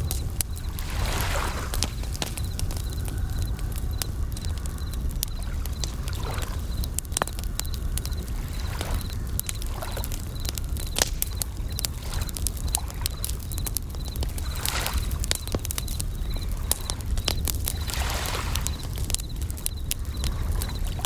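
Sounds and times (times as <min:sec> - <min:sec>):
waves washing softly: 0:00.0 - 0:13.4, 0:16.6 - 0:19.2
campfire crackling and popping: 0:00.0 - 0:21.0
crickets chirping in trills: 0:00.0 - 0:21.0.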